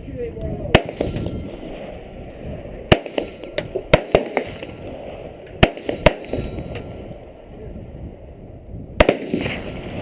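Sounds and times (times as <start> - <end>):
gunshots: 0.7 - 1.9, 2.9 - 6.9, 9.0 - 10.0.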